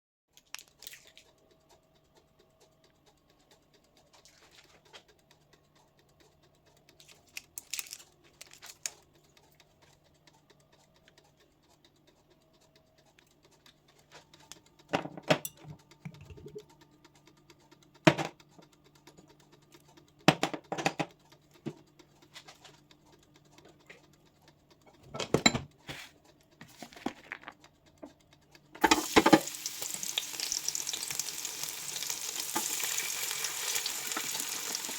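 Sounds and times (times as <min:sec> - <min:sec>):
utensils and cookware clinking: 0:14.9 - 0:16.6, 0:24.9 - 0:26.0, 0:28.8 - 0:34.9
food sizzling in a pan: 0:28.8 - 0:34.9.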